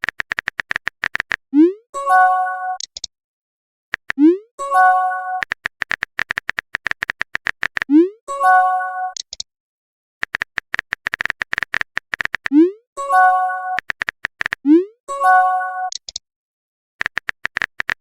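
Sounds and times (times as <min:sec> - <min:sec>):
phone keyboard typing clicks: 0:00.0 - 0:01.5, 0:04.0 - 0:04.3, 0:05.4 - 0:08.0, 0:09.1 - 0:09.5, 0:10.2 - 0:12.6, 0:13.7 - 0:14.7, 0:15.9 - 0:16.2, 0:17.0 - 0:18.0.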